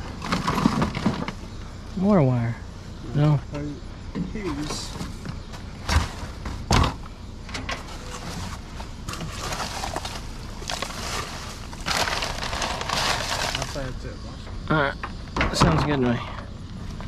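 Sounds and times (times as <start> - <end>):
rustling and shuffling through trash: 0.0 - 1.4, 4.2 - 14.0.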